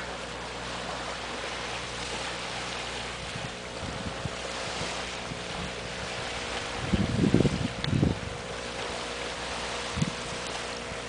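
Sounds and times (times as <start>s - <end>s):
small waves washing: 0.0s - 11.0s
wind: 0.0s - 11.0s
wind knocks on microphone: 6.6s - 8.3s, 9.9s - 10.4s.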